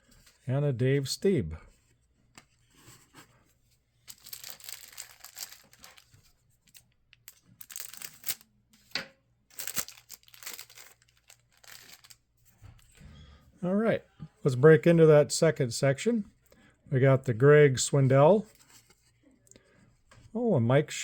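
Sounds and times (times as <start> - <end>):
plastic wrapper crinkling and tearing: 4.1 - 8.5, 9.5 - 12.2.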